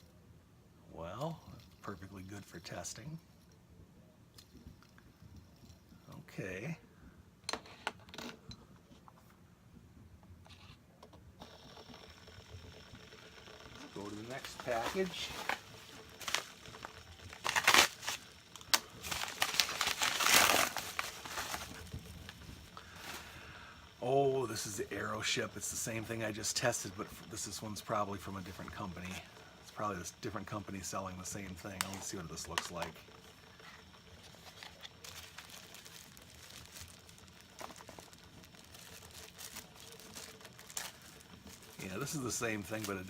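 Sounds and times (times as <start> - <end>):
packaging crinkling: 13.0 - 43.0.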